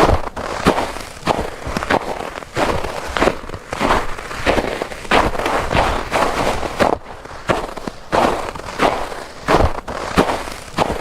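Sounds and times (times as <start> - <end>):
footsteps crunching through snow: 0.0 - 11.0.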